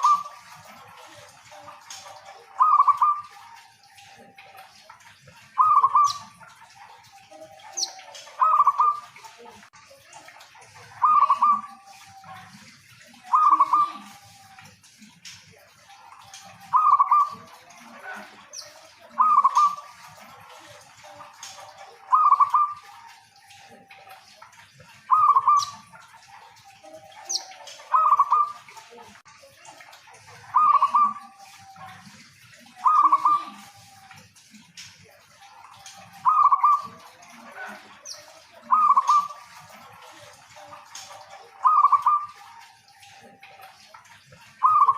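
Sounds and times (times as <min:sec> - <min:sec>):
dove cooing: 0:00.0 - 0:04.6, 0:05.4 - 0:09.2, 0:11.0 - 0:14.6, 0:15.9 - 0:24.1, 0:25.0 - 0:28.8, 0:30.5 - 0:34.0, 0:35.5 - 0:43.6, 0:44.5 - 0:44.9.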